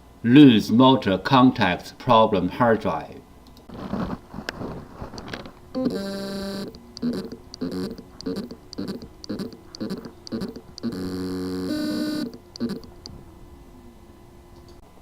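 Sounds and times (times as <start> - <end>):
short buzzing pulses: 5.8 - 13.0
hard drive motor buzzing: 5.8 - 13.2.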